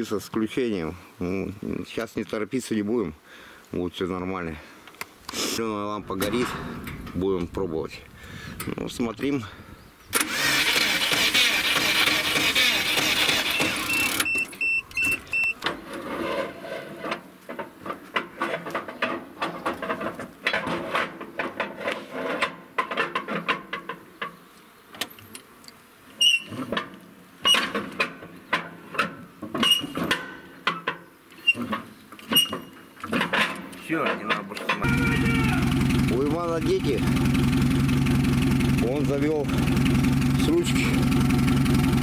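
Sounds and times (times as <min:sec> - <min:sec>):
short high beeps: 0:13.5 - 0:15.6
irregular clicks and knocks: 0:17.0 - 0:24.4
loud dense engine noise: 0:34.8 - 0:42.0.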